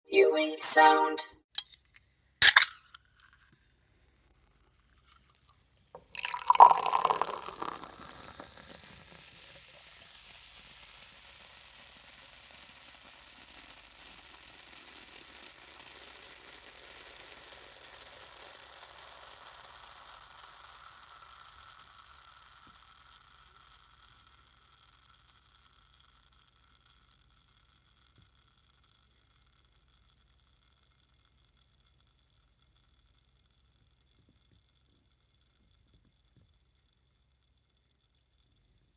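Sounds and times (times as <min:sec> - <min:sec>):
carbonated drink fizzing: 0:02.4 - 0:02.8, 0:06.0 - 0:25.5
drink splashing into glass: 0:02.4 - 0:02.8, 0:06.0 - 0:08.5.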